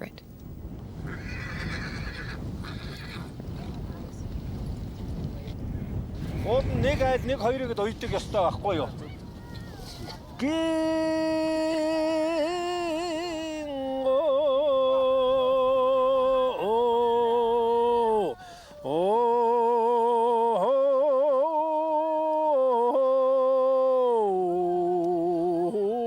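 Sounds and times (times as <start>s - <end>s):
man singing unaccompanied: 10.4s - 26.0s.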